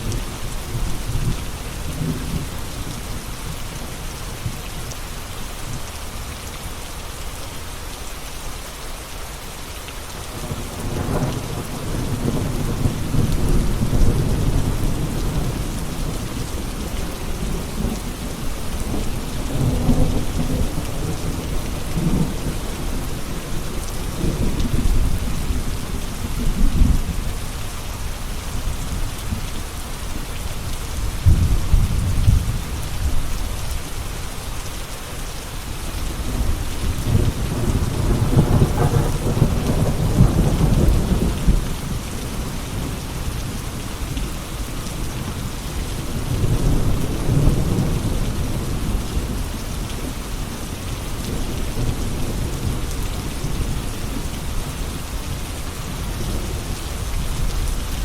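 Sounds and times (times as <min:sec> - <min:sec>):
steady rain pouring: 0:00.0 - 0:58.0
rolling thunder: 0:31.2 - 0:33.2, 0:36.1 - 0:42.0.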